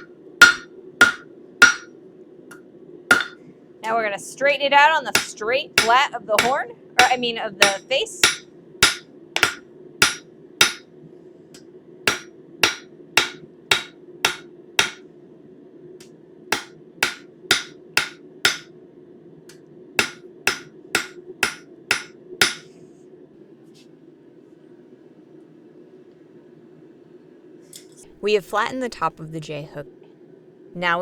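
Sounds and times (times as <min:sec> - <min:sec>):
hammer ringing on anvil: 0:00.0 - 0:01.9, 0:03.1 - 0:03.4, 0:05.2 - 0:10.8, 0:12.1 - 0:15.0, 0:16.6 - 0:18.7, 0:20.0 - 0:22.7.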